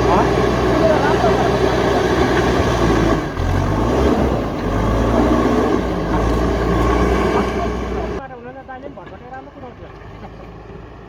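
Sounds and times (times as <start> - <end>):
diesel engine low drone: 0.0 - 8.6.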